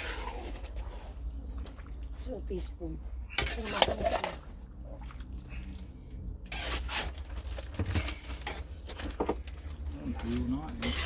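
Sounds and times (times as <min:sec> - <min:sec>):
utensil scraping in a wok: 0:00.0 - 0:01.3, 0:06.5 - 0:07.2, 0:10.4 - 0:11.0.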